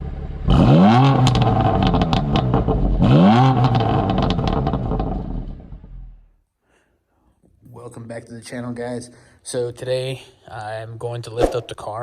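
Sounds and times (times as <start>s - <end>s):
car engine revving: 0.0s - 6.0s
sharp exhaust pops: 0.5s - 5.6s.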